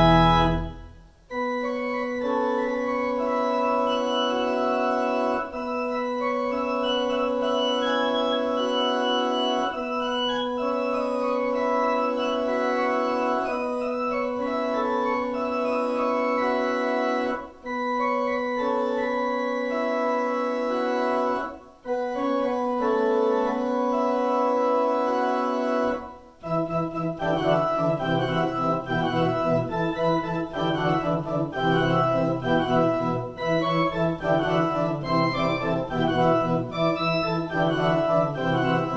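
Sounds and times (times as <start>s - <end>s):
organ music: 0.0s - 38.9s.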